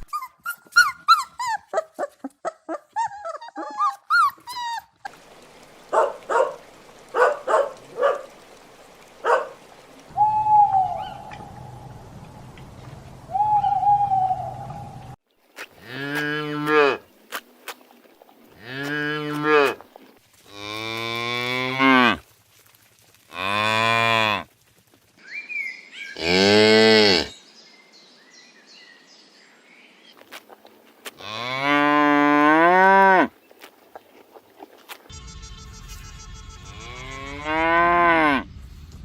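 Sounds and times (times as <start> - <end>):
cattle mooing: 36.7 - 38.4.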